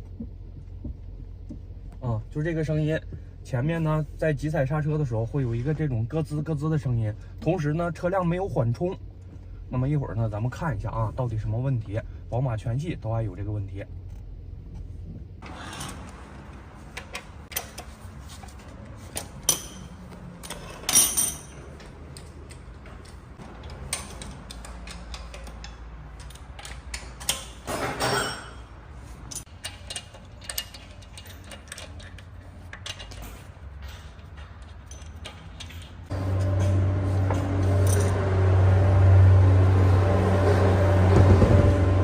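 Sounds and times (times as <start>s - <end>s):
low steady hum: 0.0s - 15.4s
hand tools clicking on metal: 19.1s - 27.7s, 29.3s - 33.2s.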